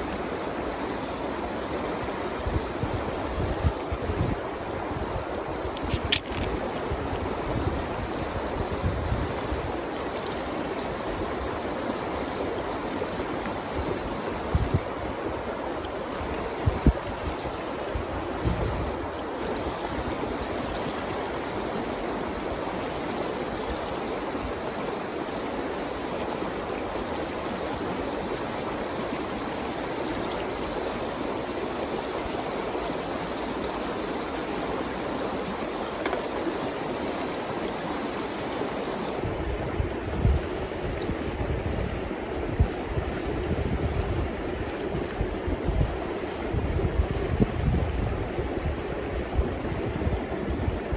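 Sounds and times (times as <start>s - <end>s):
river water rushing: 19.2s - 39.3s.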